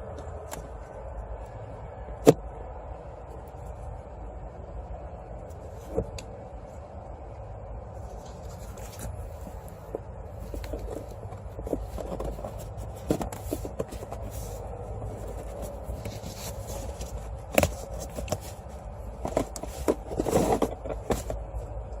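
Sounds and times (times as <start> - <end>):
steady low hum: 0.0 - 22.0
plastic rustling: 8.1 - 21.4
plastic parts clicking and knocking: 19.2 - 21.4.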